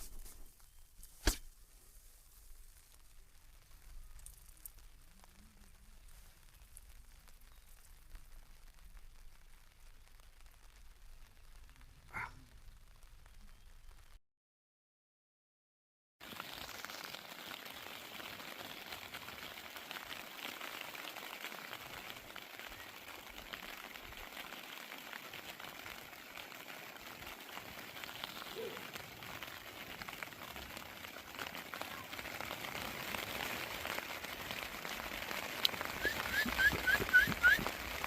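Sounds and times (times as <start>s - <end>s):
light rain falling: 0.0s - 14.2s, 16.2s - 38.0s.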